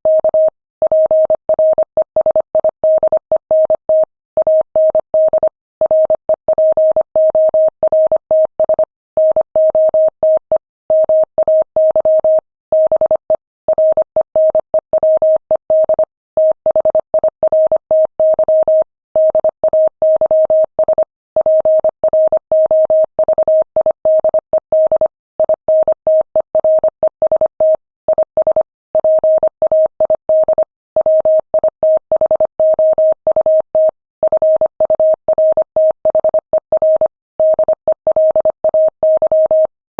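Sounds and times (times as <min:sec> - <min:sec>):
morse code beeps: 0:00.1 - 0:39.7.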